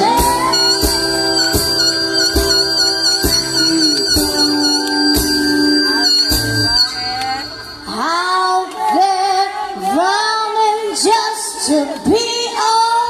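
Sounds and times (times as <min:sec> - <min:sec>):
person singing: 0:00.0 - 0:06.2
drum strikes: 0:00.0 - 0:08.0
live band music: 0:00.0 - 0:10.0.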